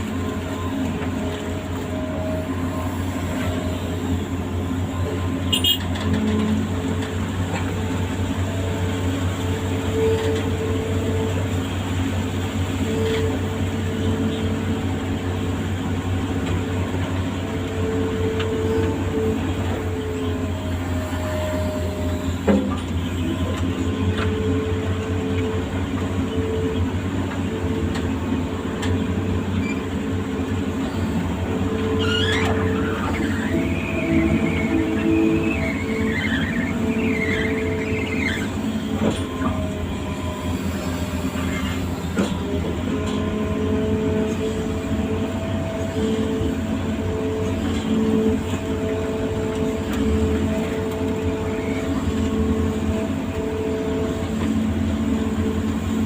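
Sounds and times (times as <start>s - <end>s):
diesel engine running: 0.0s - 56.0s
high-pitched hydraulic whine: 29.4s - 55.6s.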